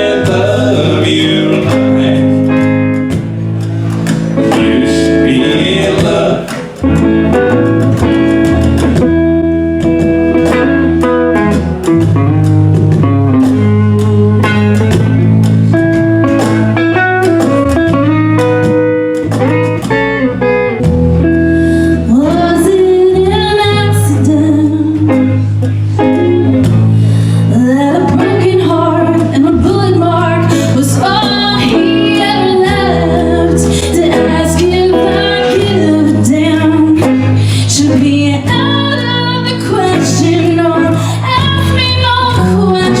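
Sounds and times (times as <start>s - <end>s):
person singing: 0.0s - 2.7s, 4.4s - 7.4s, 22.0s - 26.2s, 27.4s - 43.0s
acoustic guitar chords: 0.0s - 43.0s.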